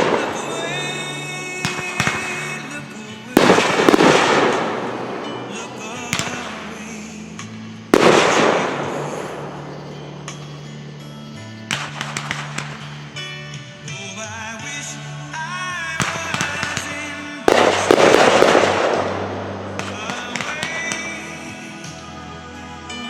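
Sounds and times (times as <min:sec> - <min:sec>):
firework booms: 0:00.0 - 0:10.8, 0:11.6 - 0:13.3, 0:16.0 - 0:21.6
firework crackle: 0:00.0 - 0:22.0
music: 0:00.0 - 0:23.0.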